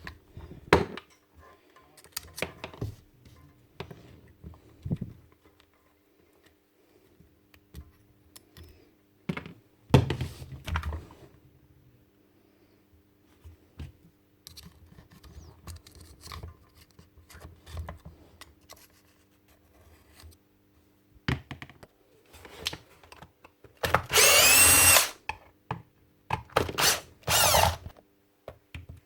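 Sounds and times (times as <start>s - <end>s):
power tool motor spinning up: 24.0s - 25.2s, 26.6s - 27.9s.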